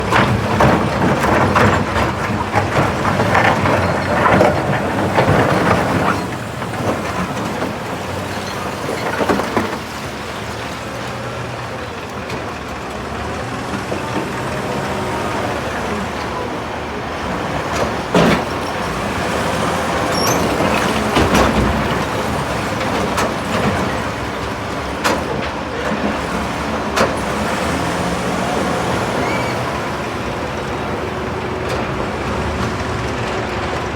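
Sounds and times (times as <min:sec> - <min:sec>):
rocks clattering and knocking: 0:00.0 - 0:14.7
diesel engine running: 0:00.0 - 0:33.9.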